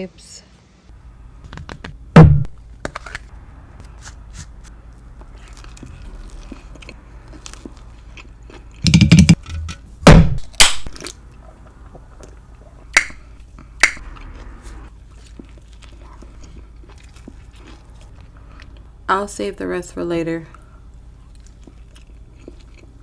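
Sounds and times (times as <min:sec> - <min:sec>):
soft chewing and mouth clicks: 0:05.0 - 0:08.8, 0:11.0 - 0:18.9, 0:20.5 - 0:23.0.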